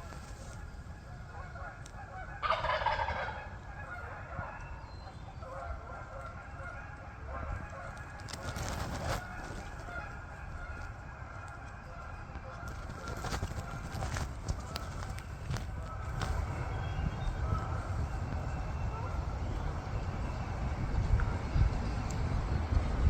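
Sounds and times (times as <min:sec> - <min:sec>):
faint turkey calls: 0:00.0 - 0:20.4
turkey gobbling: 0:00.0 - 0:20.4
crackling: 0:07.6 - 0:18.5.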